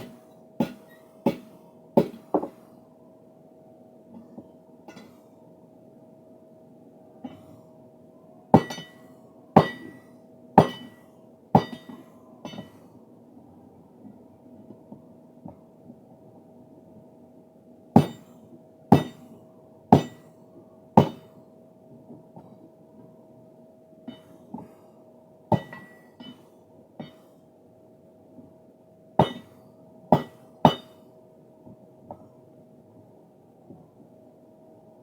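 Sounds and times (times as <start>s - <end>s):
hammer striking steel: 0.0s - 2.6s, 8.6s - 9.0s, 9.6s - 10.0s, 10.6s - 11.0s, 11.6s - 12.8s, 18.0s - 20.3s, 21.0s - 21.3s, 25.5s - 26.4s, 29.2s - 29.6s, 30.2s - 31.0s
steady hum: 0.0s - 35.0s.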